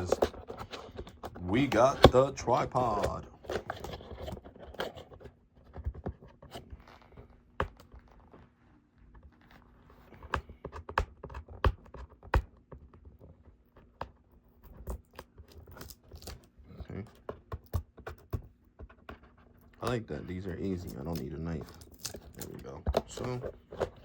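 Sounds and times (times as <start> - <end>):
fingers scraping cardboard and tape: 0.0 - 8.3.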